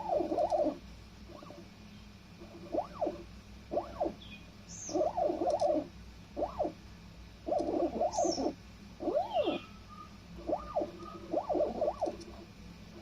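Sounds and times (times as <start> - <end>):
stepper motors whining: 7.5 - 13.0.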